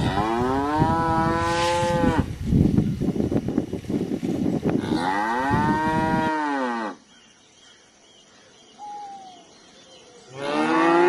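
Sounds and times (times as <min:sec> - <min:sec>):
cow mooing: 0:00.0 - 0:02.3, 0:04.8 - 0:07.0, 0:10.4 - 0:11.0.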